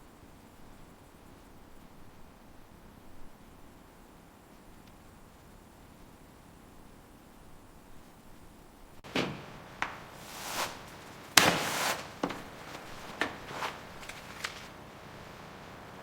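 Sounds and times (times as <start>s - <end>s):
wood scraping: 9.0s - 14.8s
wooden door knocks and bumps: 9.1s - 10.0s
brief rasp: 10.2s - 14.6s.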